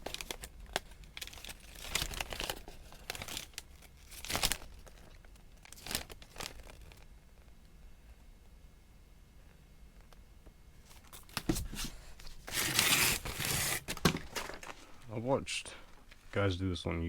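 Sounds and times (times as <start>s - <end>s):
paper crinkling and rustling: 0.0s - 7.1s, 10.8s - 15.0s.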